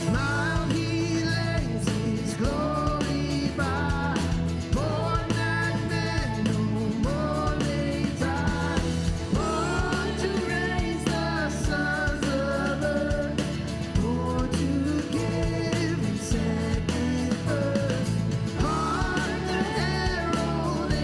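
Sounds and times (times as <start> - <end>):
bass: 0.0 - 21.0
person singing a melody: 0.0 - 21.0
steady drum beat: 0.0 - 21.0.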